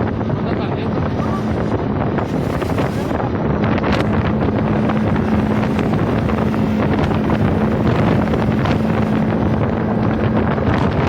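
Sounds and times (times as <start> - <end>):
boat engine running: 0.0 - 11.0
wind buffeting microphone: 0.0 - 11.0.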